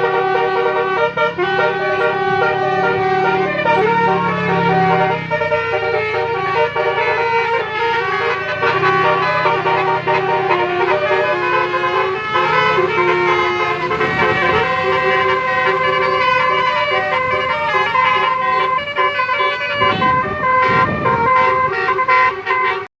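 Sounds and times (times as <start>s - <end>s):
musical bus air horn melody: 0.0s - 22.9s.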